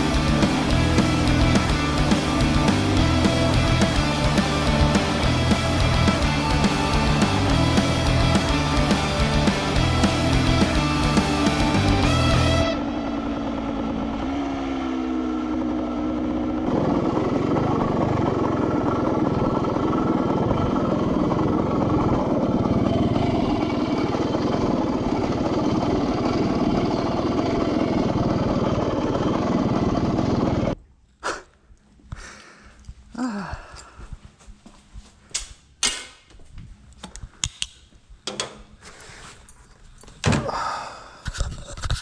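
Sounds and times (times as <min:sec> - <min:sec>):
two-stroke motorcycle engine running: 0:00.0 - 0:30.8.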